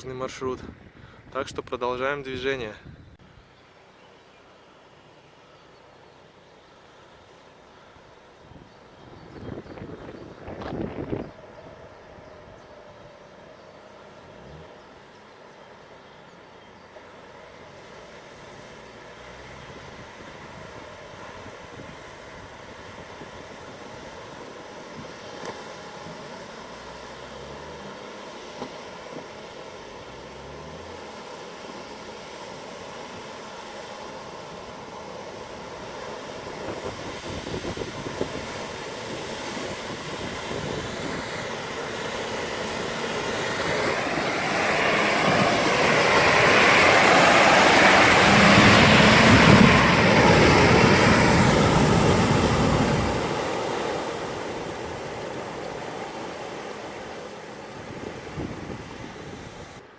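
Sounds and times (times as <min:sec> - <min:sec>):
off-road vehicle engine: 0:00.0 - 0:59.9.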